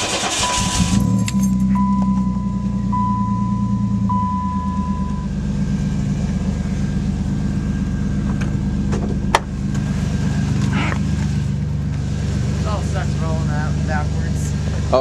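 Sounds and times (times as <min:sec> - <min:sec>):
car engine idling: 0:00.0 - 0:15.0
high warning chime: 0:00.2 - 0:05.4.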